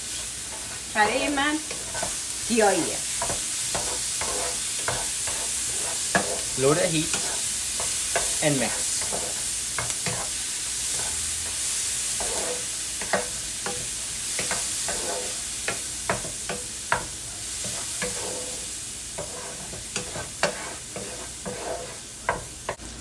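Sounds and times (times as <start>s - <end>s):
onions sizzling in a pan: 0.0s - 23.0s
utensil scraping and tapping pan: 3.2s - 8.4s, 9.0s - 10.3s, 12.2s - 18.6s, 19.2s - 22.8s.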